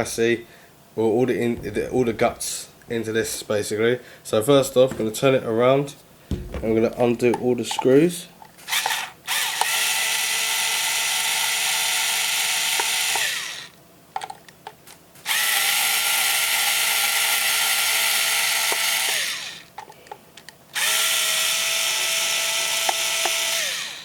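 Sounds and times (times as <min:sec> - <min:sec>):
electric screwdriver motor whine: 0:08.7 - 0:13.7, 0:15.3 - 0:19.7, 0:20.8 - 0:24.0.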